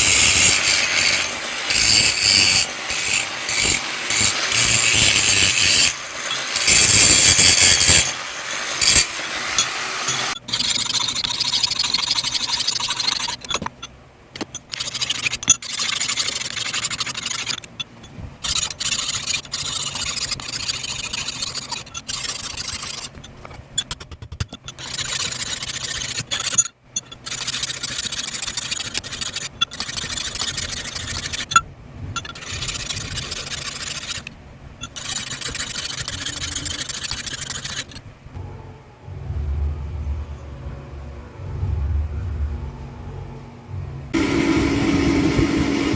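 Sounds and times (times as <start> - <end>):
electric grinder grinding steel: 0.0 - 10.4, 44.2 - 45.9.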